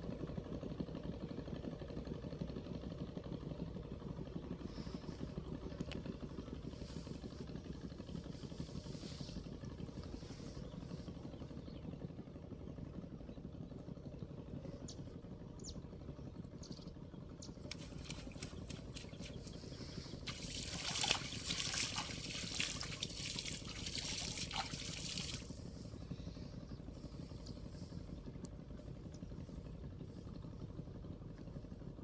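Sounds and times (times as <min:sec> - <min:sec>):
steady low rumble: 0:00.0 - 0:32.0
water splashing and trickling: 0:17.6 - 0:25.7.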